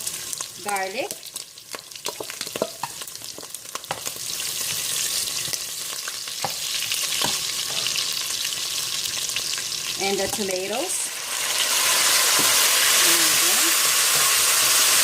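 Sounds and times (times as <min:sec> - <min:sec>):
garlic sizzling in fat: 0:00.0 - 0:15.0.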